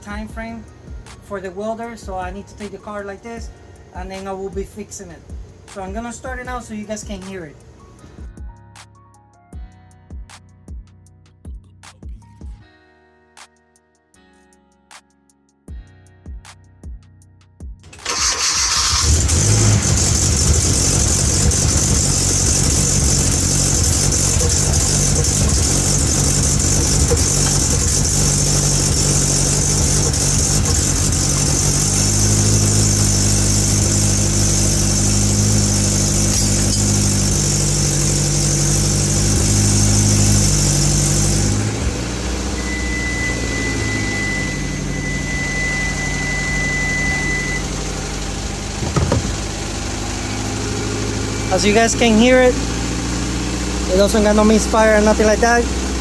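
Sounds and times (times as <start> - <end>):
car engine idling: 17.9 - 56.0
exhaust leak: 17.9 - 56.0.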